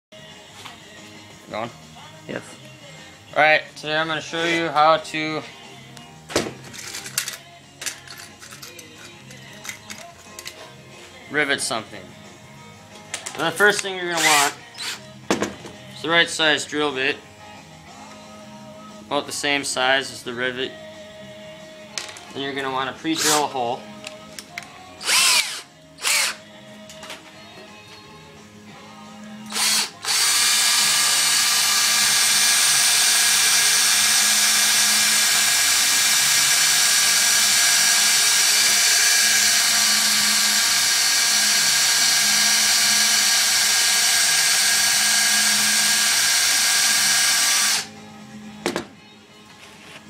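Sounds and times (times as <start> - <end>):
faint background music: 0.1 - 50.0
power drill whining: 13.6 - 15.0, 23.1 - 23.6, 25.0 - 26.4, 29.4 - 47.9.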